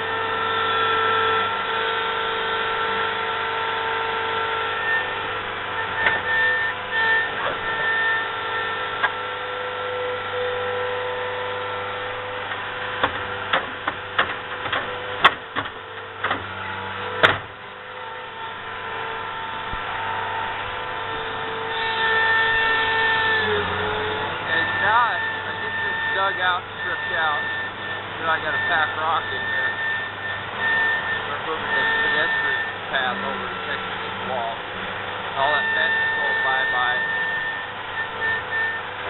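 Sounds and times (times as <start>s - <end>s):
construction machine engine running: 1.4s - 39.0s
sharp knocks and clanks: 5.8s - 7.7s, 12.4s - 17.6s.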